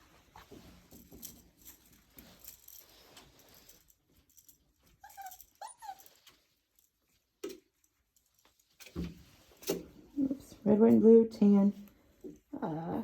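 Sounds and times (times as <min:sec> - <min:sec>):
faint clicks and rustles: 0:00.0 - 0:12.7
puppies whimpering: 0:05.0 - 0:06.2.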